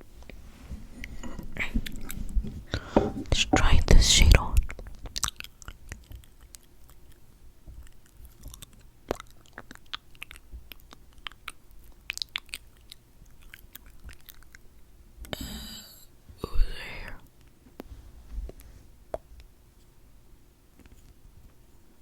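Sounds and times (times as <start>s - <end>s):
wet lip and tongue clicks: 4.7s - 7.2s, 7.8s - 14.6s.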